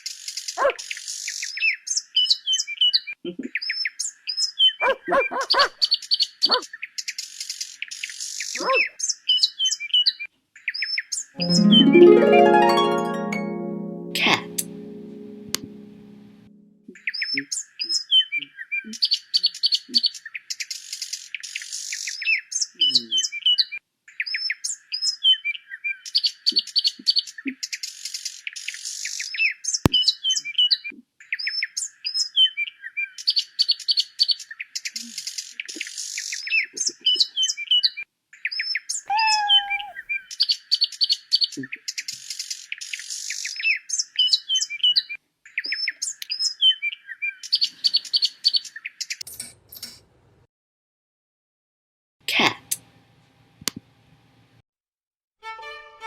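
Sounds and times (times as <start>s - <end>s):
bird chirping and twittering: 0.2s - 11.8s, 39.1s - 40.1s.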